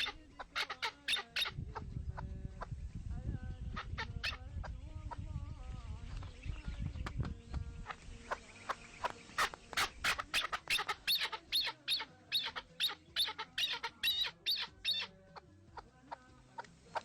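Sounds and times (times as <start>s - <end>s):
bird chirping sharply: 8.3s - 15.1s.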